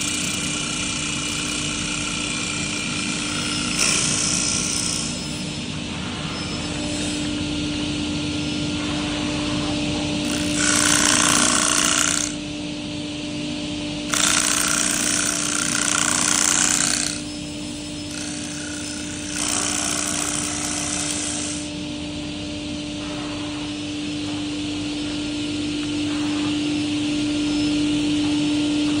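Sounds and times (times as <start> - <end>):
wood lathe humming: 0.0 - 5.2, 10.2 - 12.4, 14.1 - 17.4, 18.0 - 21.7.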